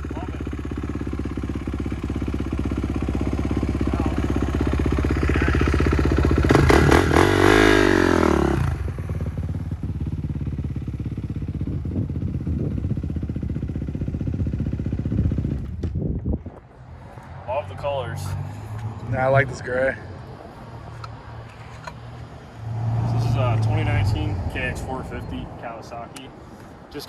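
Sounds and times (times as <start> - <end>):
motorcycle engine revving: 0.0 - 16.0, 21.8 - 25.9.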